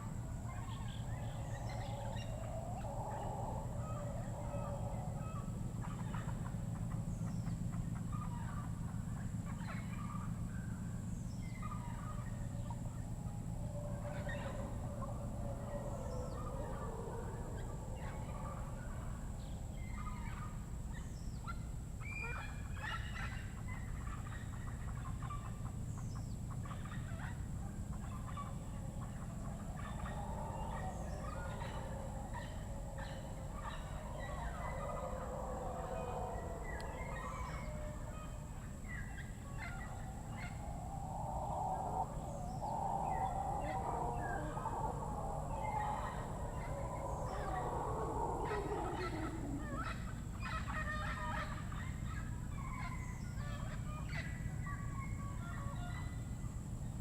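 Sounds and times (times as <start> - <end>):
wavering chorus of animal calls: 0.0 - 57.0
birds calling: 0.5 - 56.1
steady high whine: 27.4 - 55.7.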